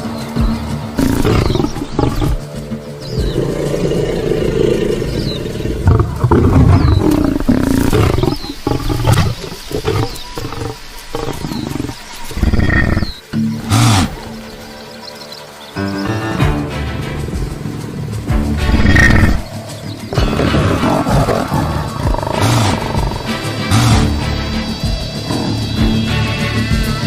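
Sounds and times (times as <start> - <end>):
lion roaring: 1.0 - 14.4, 18.6 - 24.5.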